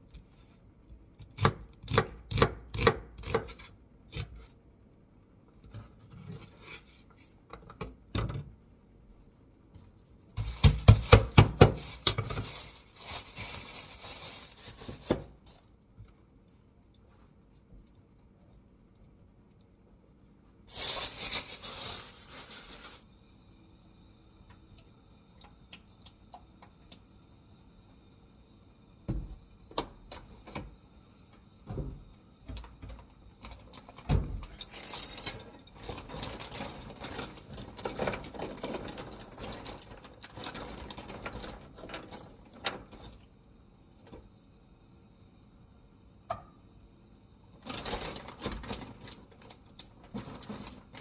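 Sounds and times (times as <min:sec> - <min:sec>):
loud hiss: 0:20.7 - 0:24.2
utensils and cookware clattering: 0:34.4 - 0:42.2.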